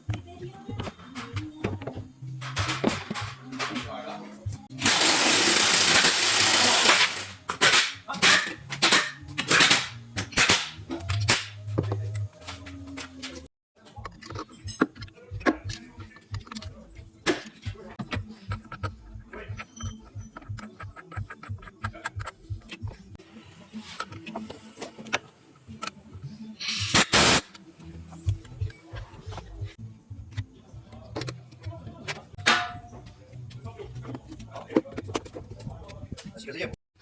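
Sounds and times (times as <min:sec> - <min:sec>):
loud hissing burst: 0:04.8 - 0:07.9, 0:26.6 - 0:27.4.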